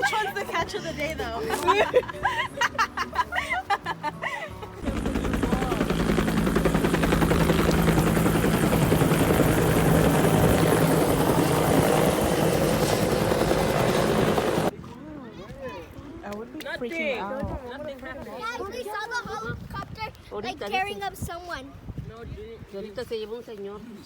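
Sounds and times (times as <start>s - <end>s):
helicopter rotor and engine: 4.8s - 14.7s.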